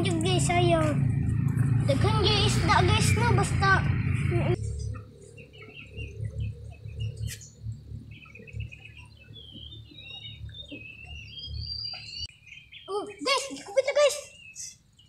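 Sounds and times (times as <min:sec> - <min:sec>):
low rumble: 0:00.0 - 0:11.3
small birds chirping: 0:00.0 - 0:15.0.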